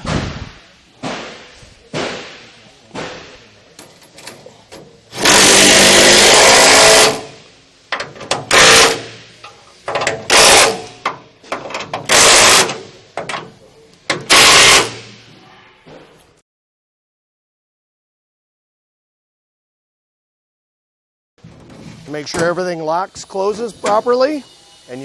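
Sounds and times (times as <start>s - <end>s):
impact wrench hammering: 5.1s - 15.2s.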